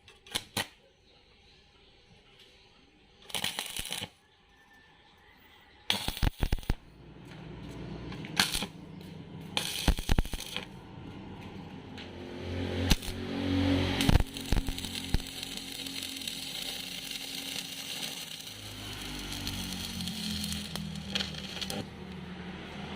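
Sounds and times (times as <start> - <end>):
welding arc crackling and popping: 3.2 - 4.2, 5.9 - 22.9.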